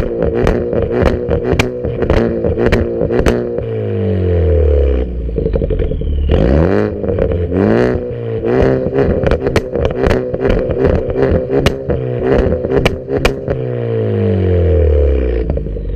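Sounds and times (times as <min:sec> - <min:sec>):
exhaust pops and crackles: 0:00.0 - 0:03.7, 0:05.3 - 0:13.7, 0:15.4 - 0:15.9
car engine revving: 0:00.0 - 0:15.9.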